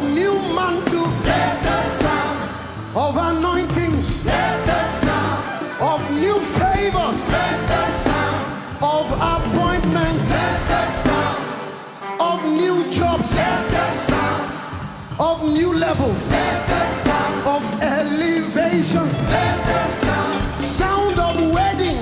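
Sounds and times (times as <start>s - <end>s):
band playing worship music: 0.0s - 22.0s
voices singing long notes: 1.0s - 3.0s, 4.1s - 15.1s, 16.2s - 18.1s, 19.1s - 21.2s.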